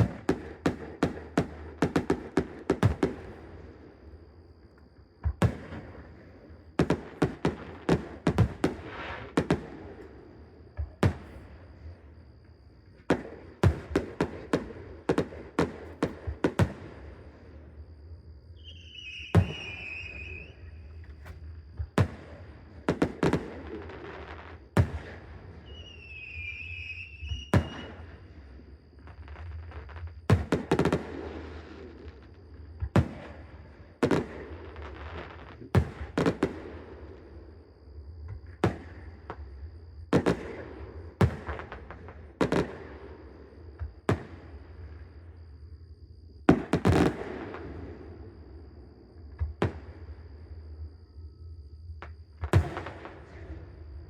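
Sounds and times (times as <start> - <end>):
fireworks bursting: 6.8 - 10.1, 18.6 - 21.3, 21.9 - 28.3, 46.5 - 48.1, 52.4 - 53.5
wavering firework whistle: 18.5 - 22.4, 23.0 - 29.2.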